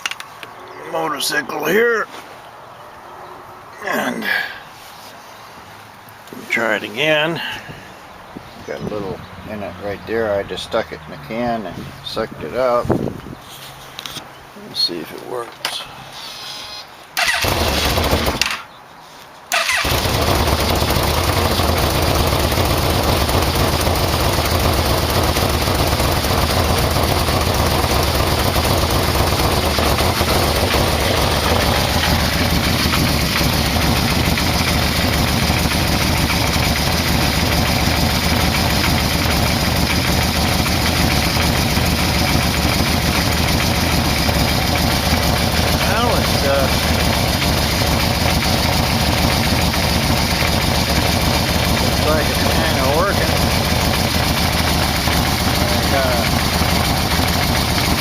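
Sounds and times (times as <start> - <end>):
motorcycle engine idling: 17.2 - 18.4, 19.6 - 58.0
motorcycle engine cranking: 17.2 - 18.6, 19.5 - 58.0.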